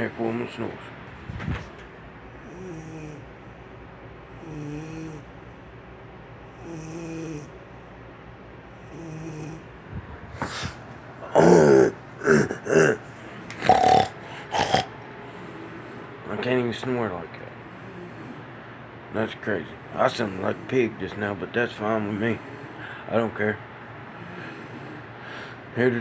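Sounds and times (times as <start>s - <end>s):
woman snoring: 2.5s - 3.2s, 4.4s - 5.3s, 6.6s - 7.5s, 10.4s - 13.0s, 13.6s - 14.9s
man imitating pig-like snorts: 4.4s - 5.3s, 10.4s - 14.9s.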